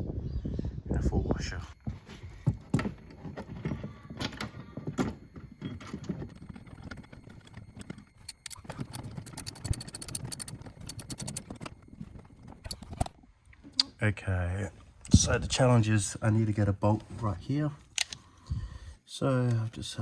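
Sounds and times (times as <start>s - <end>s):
sharp clicks: 7.0s - 11.8s.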